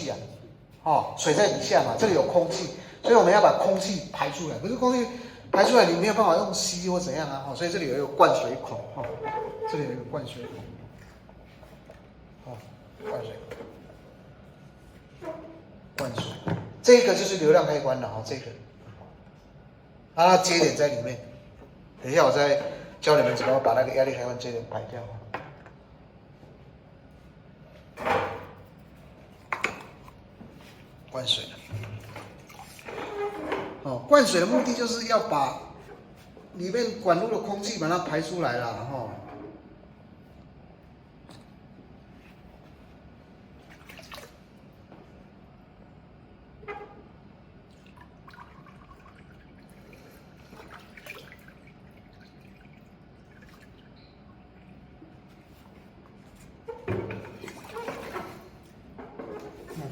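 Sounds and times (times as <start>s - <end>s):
water trickling and dripping: 47.7s - 55.2s.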